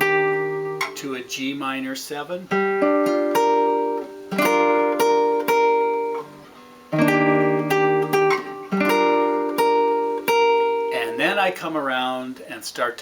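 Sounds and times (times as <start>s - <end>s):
guitar chords ringing: 0.0s - 12.3s.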